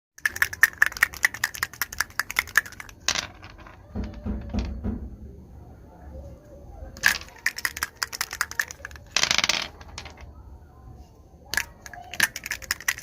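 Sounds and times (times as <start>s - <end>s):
plastic dice clattering: 0.2s - 4.7s, 7.0s - 10.3s, 11.5s - 13.0s.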